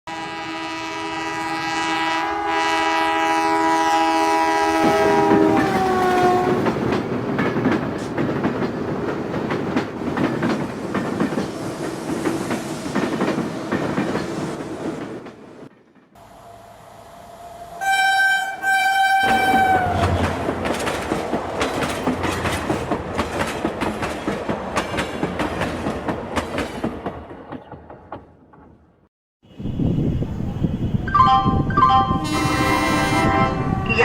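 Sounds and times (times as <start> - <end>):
train horn sounding: 0.1 - 6.8, 16.2 - 20.5, 30.8 - 34.0
train wheels clattering over rail joints: 4.8 - 16.2, 19.3 - 28.8.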